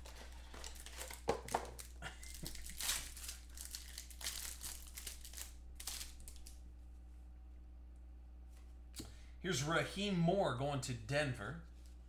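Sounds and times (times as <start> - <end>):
plastic wrapping crinkling: 0.0 - 6.6
steady low hum: 0.0 - 12.0.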